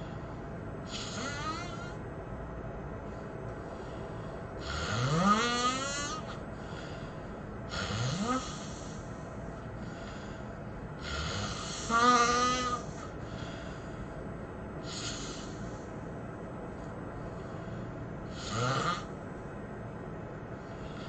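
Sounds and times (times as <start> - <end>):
person snoring heavily: 0.9 - 2.0, 4.6 - 7.1, 7.7 - 9.1, 9.8 - 13.9, 14.8 - 15.8, 17.4 - 19.2.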